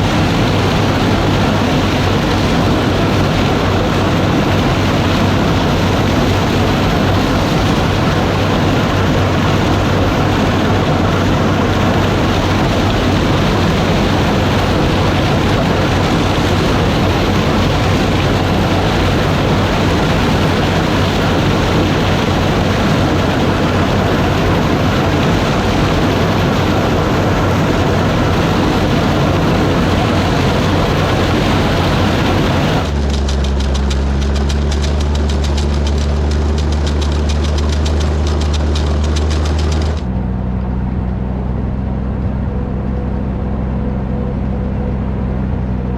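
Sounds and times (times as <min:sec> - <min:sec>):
combine harvester machinery: 0:00.0 - 0:45.9
engine idle hum: 0:00.0 - 0:45.9.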